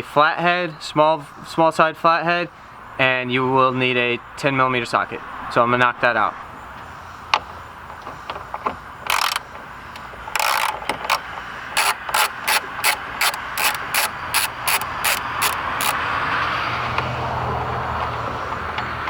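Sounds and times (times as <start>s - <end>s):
socket ratchet clicking: 9.0s - 16.0s.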